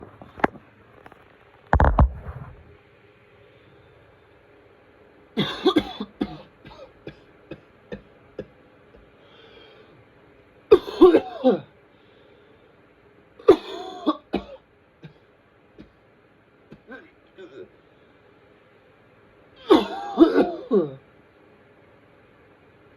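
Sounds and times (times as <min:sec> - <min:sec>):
person coughing: 0:05.4 - 0:07.7, 0:10.7 - 0:11.7, 0:13.4 - 0:14.6, 0:19.6 - 0:21.0.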